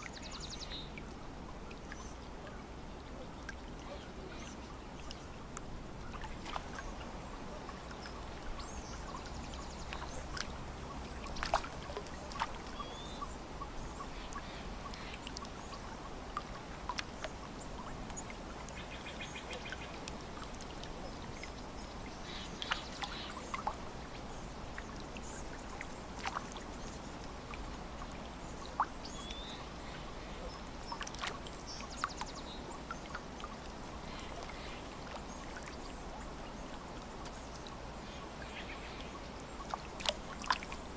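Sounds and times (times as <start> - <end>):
water lapping against shore: 0.0 - 40.9
small sharp splashes: 5.0 - 7.1, 7.7 - 13.1, 26.1 - 26.6, 30.9 - 32.3
bird calls: 12.4 - 15.9.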